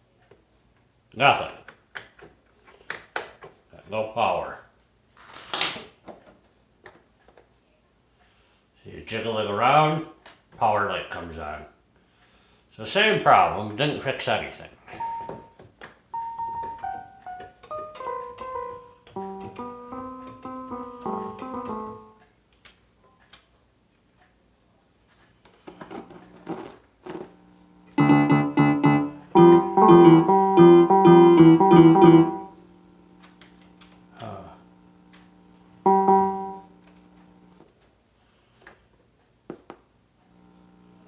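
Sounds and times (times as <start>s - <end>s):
electronic keyboard notes and chords: 15.0s - 15.6s, 16.2s - 22.2s, 28.0s - 32.6s, 35.8s - 36.8s.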